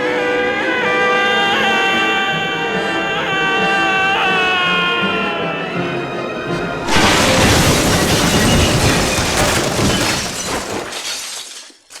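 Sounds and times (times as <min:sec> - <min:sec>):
loud shattering crash: 0:06.9 - 0:12.0.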